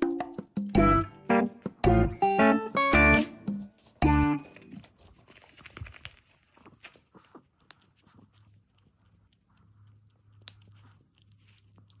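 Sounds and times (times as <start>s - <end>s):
dog chewing dry kibble: 4.7s - 12.0s.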